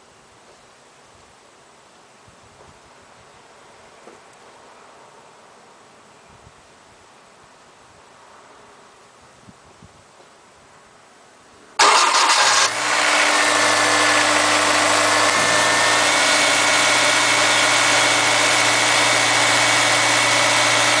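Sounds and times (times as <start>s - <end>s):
car engine cranking and idling: 11.8s - 21.0s.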